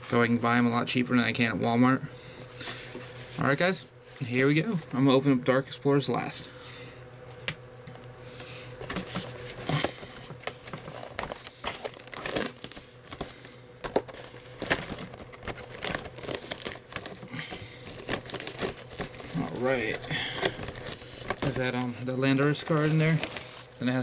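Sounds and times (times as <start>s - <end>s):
plastic wrap crinkling: 7.4s - 24.0s
plastic wrap tearing: 8.8s - 24.0s.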